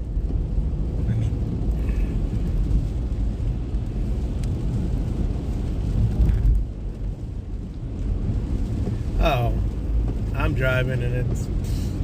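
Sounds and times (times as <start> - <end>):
car tyre noise on wet road: 0.0 - 12.0.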